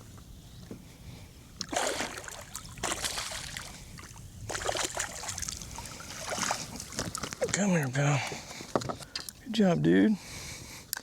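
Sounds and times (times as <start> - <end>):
water splashing: 1.6 - 7.7
fish thrashing at the surface: 1.7 - 3.7, 4.5 - 7.4.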